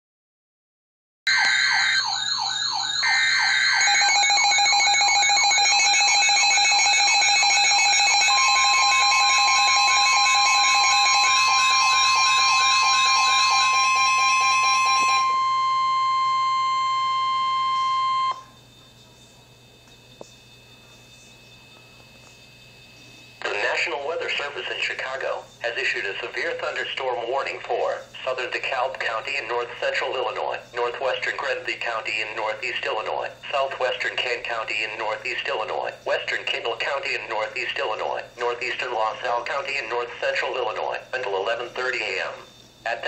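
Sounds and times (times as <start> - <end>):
warbling electronic alarm tones: 1.3 - 25.2
steady single-pitch warning tone: 1.3 - 43.0.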